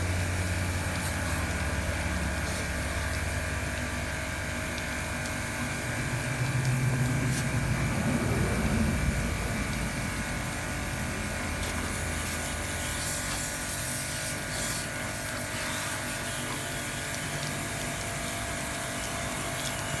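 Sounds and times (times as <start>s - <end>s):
pressure washer pump running: 0.0s - 20.0s
water spray hissing: 0.7s - 3.2s, 11.6s - 16.4s.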